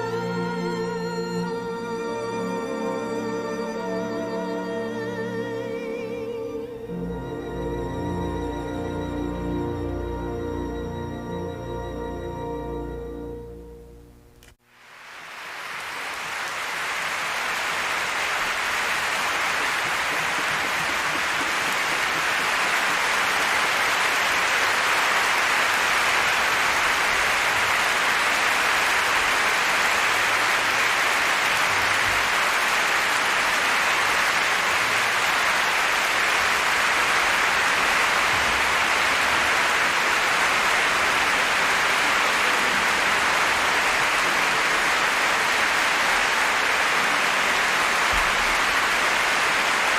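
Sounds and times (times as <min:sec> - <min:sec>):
audience applauding: 0:14.8 - 0:49.9.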